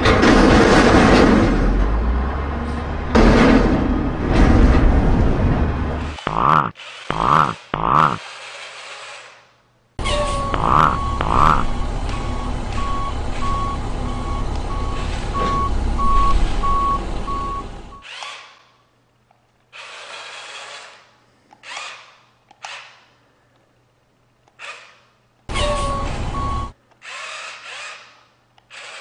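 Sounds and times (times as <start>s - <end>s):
heavy truck engine running: 0.0s - 8.1s, 10.0s - 18.0s, 25.6s - 26.7s
reversing alarm beeping: 10.1s - 18.0s, 25.6s - 26.8s.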